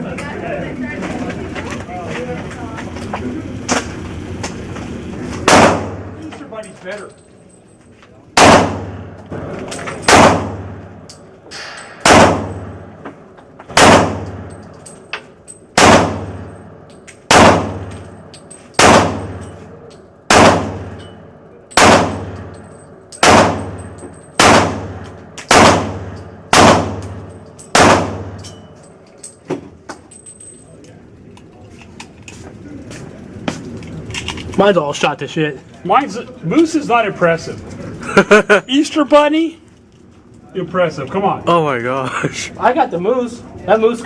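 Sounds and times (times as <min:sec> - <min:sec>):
handgun shots with echo: 0:05.4 - 0:06.1, 0:08.4 - 0:10.8, 0:11.5 - 0:12.8, 0:13.7 - 0:14.5, 0:15.8 - 0:16.5, 0:17.3 - 0:18.0, 0:18.8 - 0:19.5, 0:20.3 - 0:21.0, 0:21.7 - 0:22.5, 0:23.2 - 0:23.8, 0:24.4 - 0:28.5.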